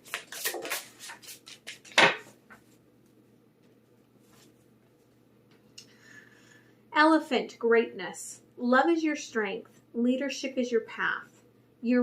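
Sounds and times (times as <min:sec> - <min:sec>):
cards clicking and slapping: 0:00.0 - 0:02.3.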